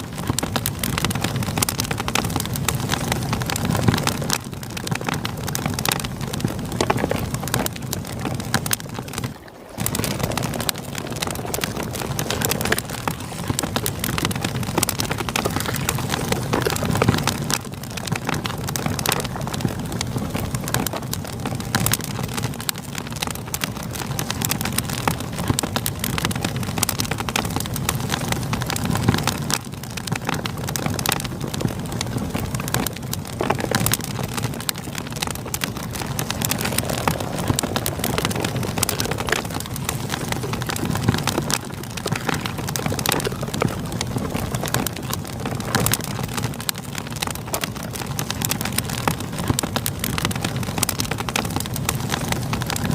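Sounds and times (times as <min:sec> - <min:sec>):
river flowing: 0:00.0 - 0:18.1, 0:31.8 - 0:48.0
campfire crackling: 0:00.0 - 0:52.9.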